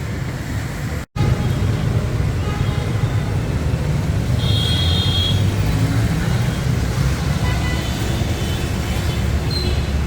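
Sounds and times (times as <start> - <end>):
road traffic engine rumble: 0.0 - 10.0.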